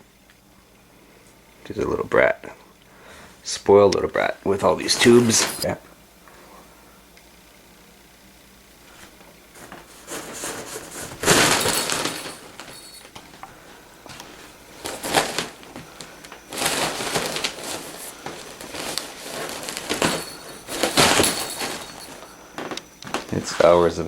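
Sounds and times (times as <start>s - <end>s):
cat toy crinkling and rattling: 10.1s - 13.4s, 14.2s - 22.8s.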